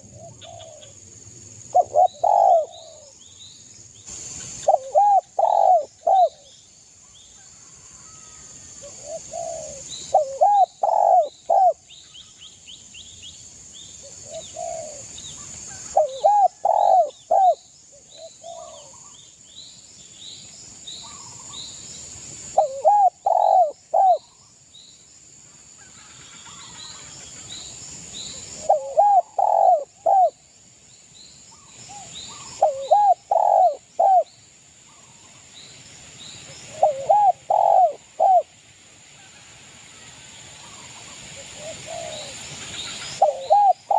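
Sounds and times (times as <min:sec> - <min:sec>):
dove cooing: 0:00.0 - 0:00.9, 0:01.7 - 0:03.1, 0:04.6 - 0:06.5, 0:08.8 - 0:11.8, 0:14.2 - 0:15.1, 0:15.8 - 0:17.6, 0:18.2 - 0:19.1, 0:22.6 - 0:24.4, 0:28.6 - 0:30.4, 0:32.0 - 0:34.3, 0:36.7 - 0:38.5, 0:41.4 - 0:42.4, 0:43.2 - 0:43.9
small birds chirping: 0:00.0 - 0:07.4, 0:08.9 - 0:21.8, 0:26.5 - 0:38.5, 0:40.6 - 0:43.9.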